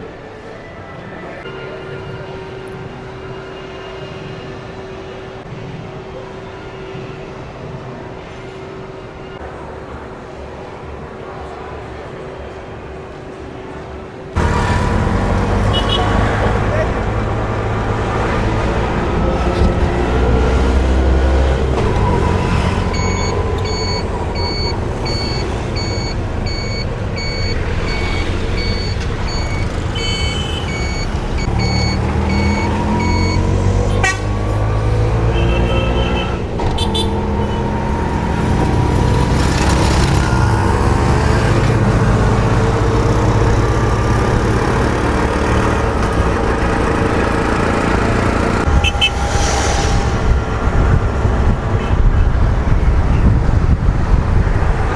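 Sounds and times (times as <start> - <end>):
vehicle engines passing: 14.3 - 54.9
electronic beeper: 22.9 - 33.6
short horn toots: 48.7 - 50.9.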